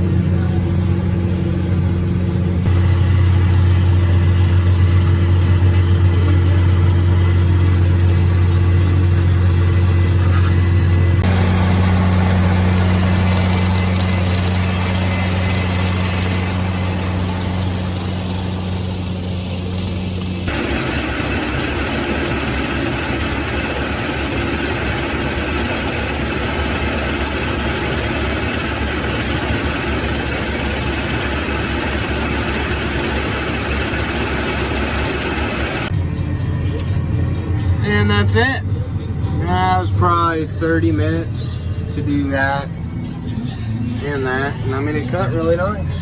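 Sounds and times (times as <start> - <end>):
tractor engine running: 0.0 - 35.9
rotary cutter in grass: 11.2 - 35.9.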